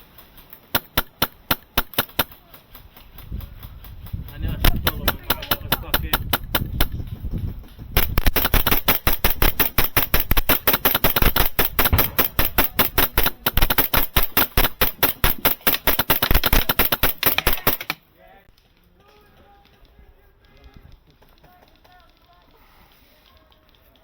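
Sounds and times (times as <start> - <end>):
airsoft gun firing full auto: 0.7 - 2.7, 8.0 - 18.0.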